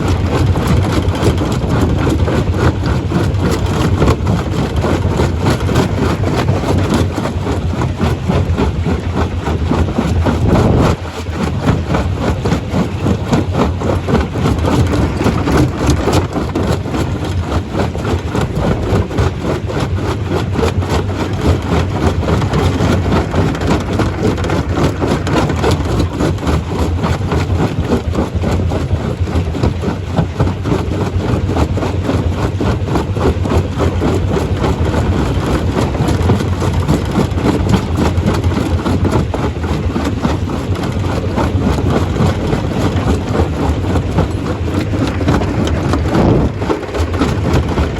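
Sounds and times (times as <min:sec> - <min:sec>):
stone crusher drone: 0:00.0 - 0:30.0, 0:30.9 - 0:47.9
rock clattering: 0:43.2 - 0:47.9.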